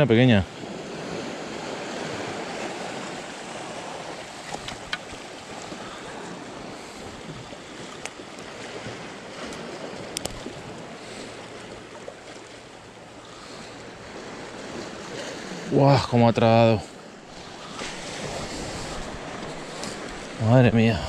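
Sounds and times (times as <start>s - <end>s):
sea waves washing: 0.0s - 21.0s.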